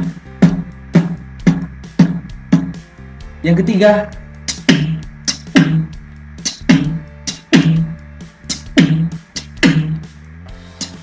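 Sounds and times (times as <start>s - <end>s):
steady low hum: 0.0s - 11.0s
person beatboxing: 4.5s - 10.0s.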